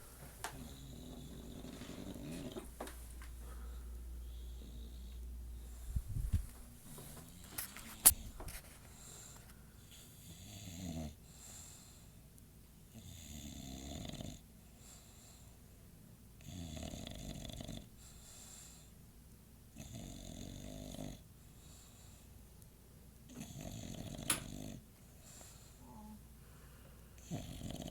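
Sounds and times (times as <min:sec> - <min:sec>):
dog snoring: 0:00.5 - 0:05.8, 0:09.9 - 0:12.0, 0:12.9 - 0:15.4, 0:16.4 - 0:18.5, 0:19.7 - 0:22.2, 0:23.3 - 0:26.0, 0:27.2 - 0:27.9.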